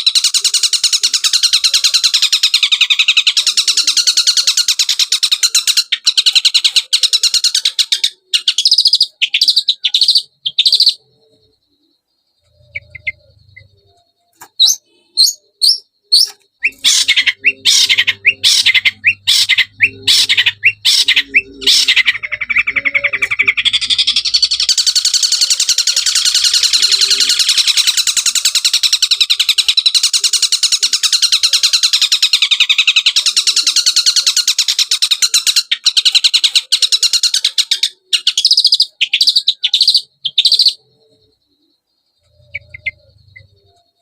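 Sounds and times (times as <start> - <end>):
bird song with chattering trills: 0.0 - 44.0
sharp bird notes: 12.4 - 31.8, 42.3 - 43.8.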